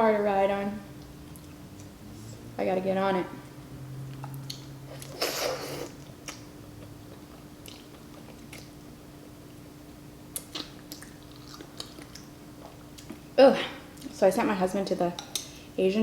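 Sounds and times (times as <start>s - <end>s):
person chewing noodles: 4.1s - 8.8s, 10.3s - 13.2s.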